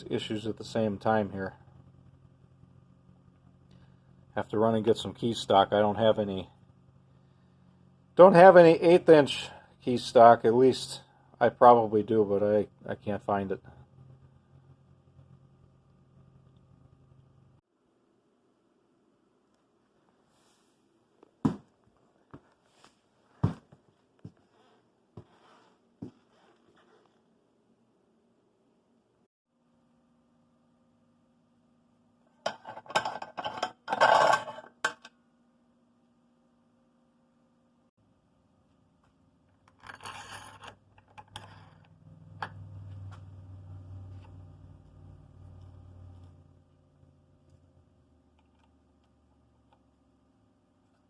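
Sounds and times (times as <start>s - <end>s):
low steady hum: 0.0s - 51.0s
soft rustling: 21.9s - 27.3s
metal parts scraping: 39.7s - 41.9s.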